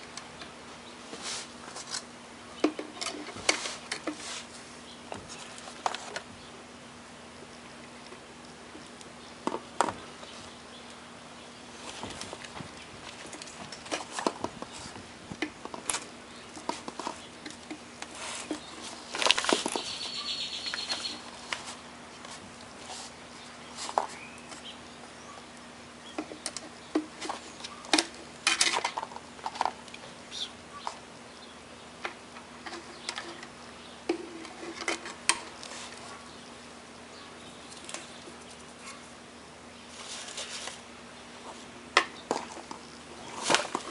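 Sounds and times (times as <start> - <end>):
faint steady hum: 0.0 - 43.9
small parts and tools handled: 11.8 - 20.0, 26.2 - 30.0, 34.1 - 36.0.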